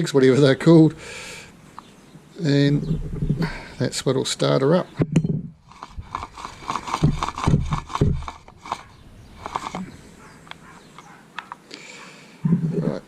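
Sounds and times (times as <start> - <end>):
scraping and rubbing of parts: 5.6 - 10.0.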